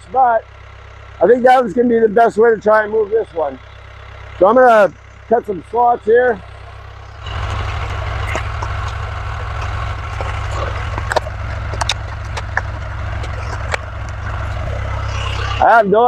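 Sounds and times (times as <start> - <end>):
tractor engine idling: 0.0 - 16.0
power saw cutting wood: 6.4 - 15.7.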